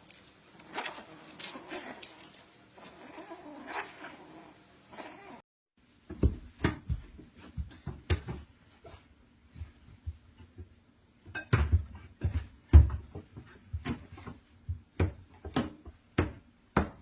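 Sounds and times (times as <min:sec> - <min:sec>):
knocks and clattering thumps: 0:11.3 - 0:17.0.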